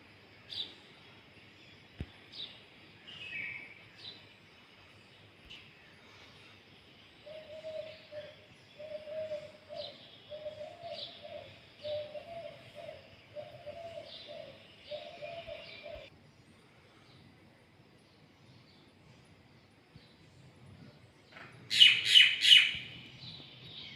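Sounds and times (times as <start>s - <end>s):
dove cooing: 7.2s - 16.1s
high bird chirps: 21.7s - 23.0s.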